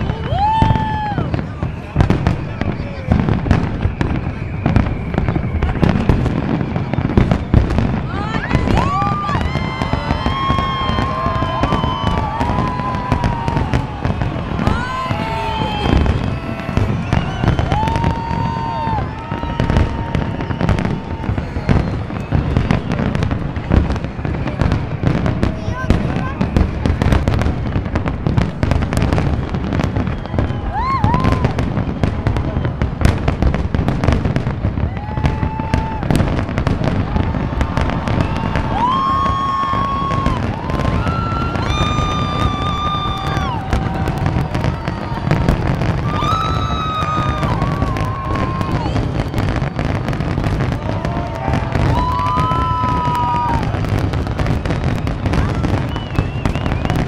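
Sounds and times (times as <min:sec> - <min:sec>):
fireworks bursts and crackles: 0:00.0 - 0:57.0
fireworks whistles: 0:00.0 - 0:57.0.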